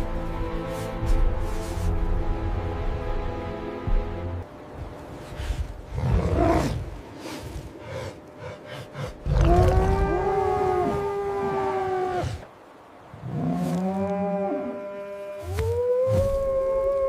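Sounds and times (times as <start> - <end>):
wolf howling: 9.2 - 12.5, 13.4 - 17.0.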